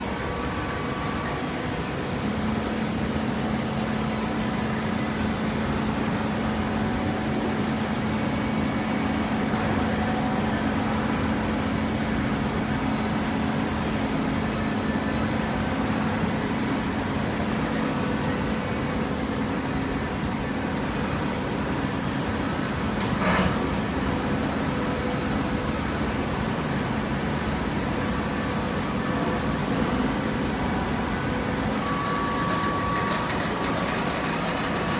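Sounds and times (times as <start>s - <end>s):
baler machine hum: 0.0s - 34.9s
machine drone: 22.3s - 34.9s.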